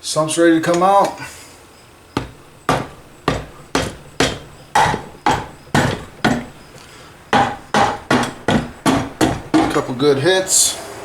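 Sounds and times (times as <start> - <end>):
hammer striking metal: 2.2 - 10.0.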